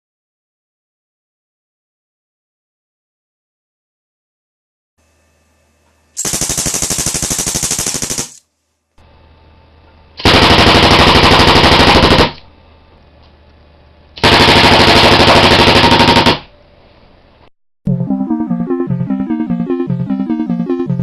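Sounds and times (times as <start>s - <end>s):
air gun automatic bursts: 6.2s - 8.4s, 10.2s - 12.4s, 14.2s - 16.5s.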